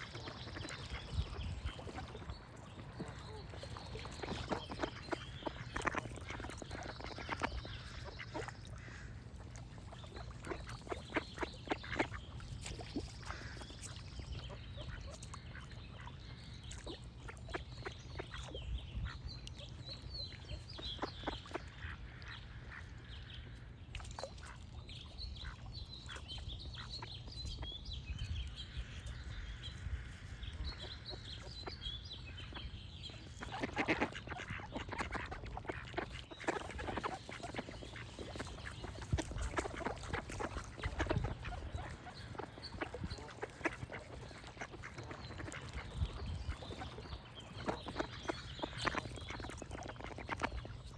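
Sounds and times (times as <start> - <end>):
ducks quacking: 0.0 - 16.2, 29.8 - 50.9
small birds chirping: 0.0 - 50.9.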